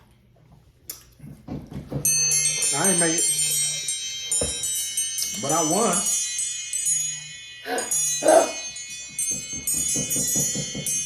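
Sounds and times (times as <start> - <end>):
bell-like chime music: 2.0 - 11.0.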